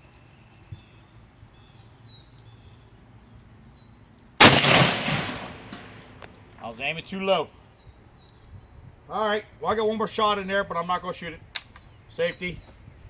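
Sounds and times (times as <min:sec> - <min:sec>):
rifle shot with echo: 0:04.4 - 0:06.3
faint bird chirps: 0:07.5 - 0:09.0, 0:11.4 - 0:12.8.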